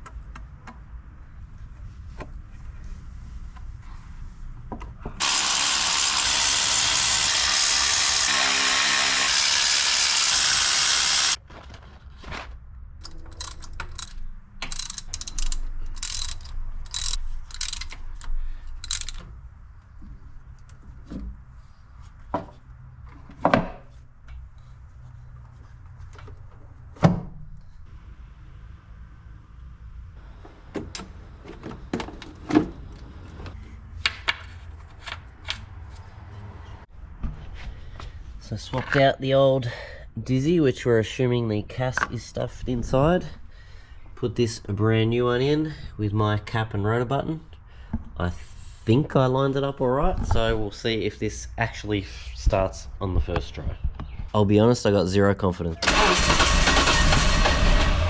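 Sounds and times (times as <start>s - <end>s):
socket ratchet clicking: 13.3s - 19.2s.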